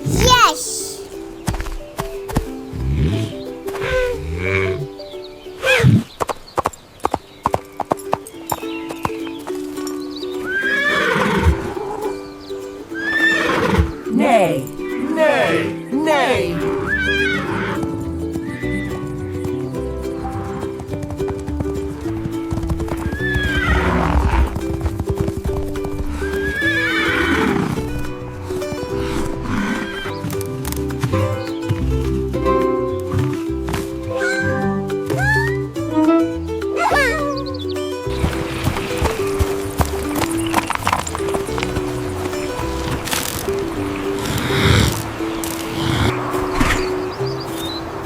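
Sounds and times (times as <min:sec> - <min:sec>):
light background music: 0:00.0 - 0:48.0
horse whinnying: 0:23.1 - 0:24.5, 0:26.3 - 0:27.4, 0:29.5 - 0:30.2.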